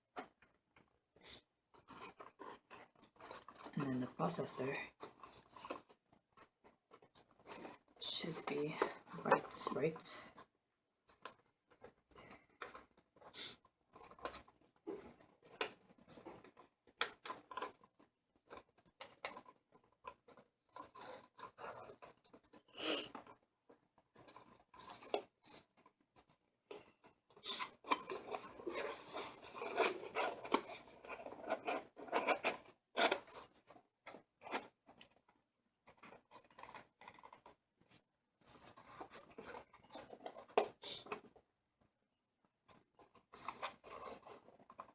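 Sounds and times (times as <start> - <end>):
packaging rustling and scraping: 24.1 - 35.2, 35.9 - 41.3, 43.1 - 44.9.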